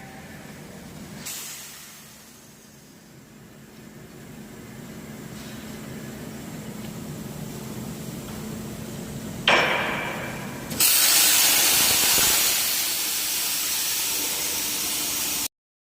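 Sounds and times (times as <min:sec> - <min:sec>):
low machine hum: 0:00.0 - 0:15.5
cutting torch jet hiss: 0:01.2 - 0:02.6, 0:10.7 - 0:15.5.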